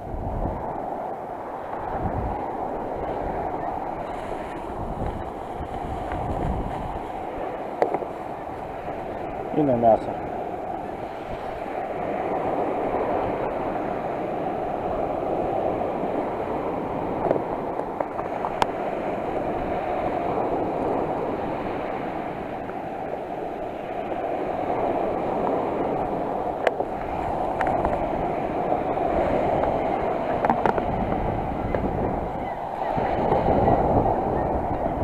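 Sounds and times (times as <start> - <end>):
sea surf washing on shore: 0.0 - 35.0.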